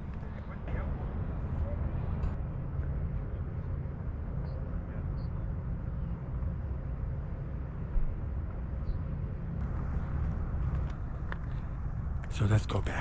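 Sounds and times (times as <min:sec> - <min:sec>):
wind rumbling on microphone: 0:09.6 - 0:12.3.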